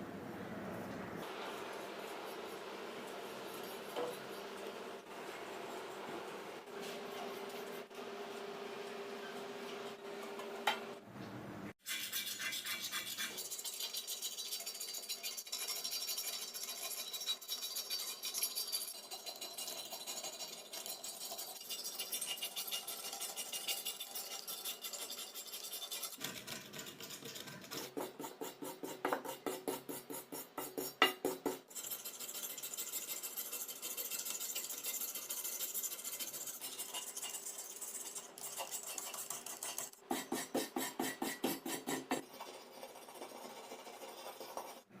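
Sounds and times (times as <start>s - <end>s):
scratchy sanding of metal frame: 31.7s - 40.0s.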